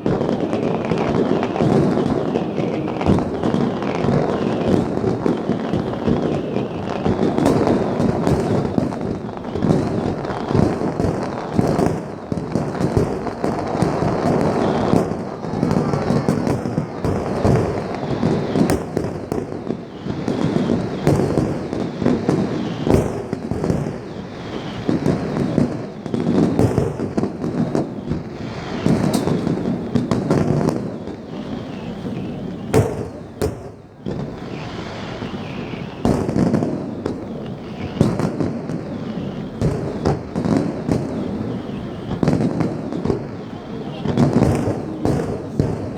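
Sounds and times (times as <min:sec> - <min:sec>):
firework crackling and rumble: 0:00.0 - 0:45.9
firework shell bursts: 0:28.0 - 0:30.6.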